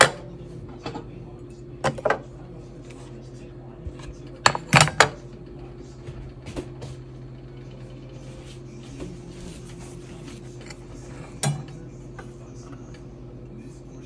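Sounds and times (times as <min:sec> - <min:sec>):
cookware knocks and clicks: 0:04.4 - 0:05.2.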